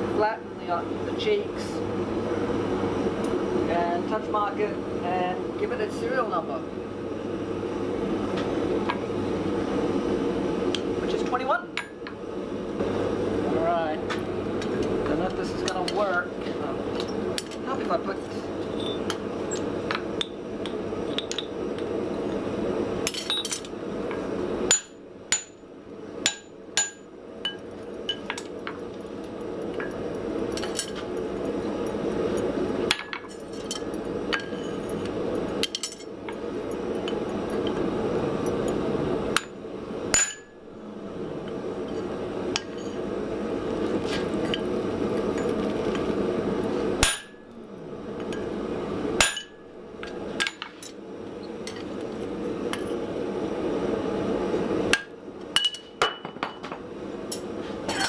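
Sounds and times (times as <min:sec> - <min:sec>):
steady roaring noise: 0:00.0 - 0:55.6
hammer striking hot steel: 0:18.6 - 0:21.9, 0:23.0 - 0:25.6, 0:26.3 - 0:29.0, 0:31.8 - 0:37.8, 0:39.3 - 0:40.6, 0:41.9 - 0:43.1, 0:47.0 - 0:47.6, 0:49.1 - 0:51.0, 0:54.9 - 0:56.8.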